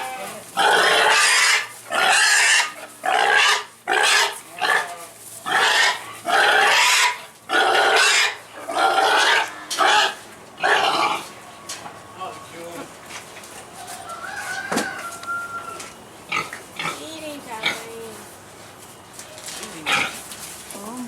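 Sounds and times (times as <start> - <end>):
farm animal harsh cries: 0.0 - 11.4, 13.8 - 18.0.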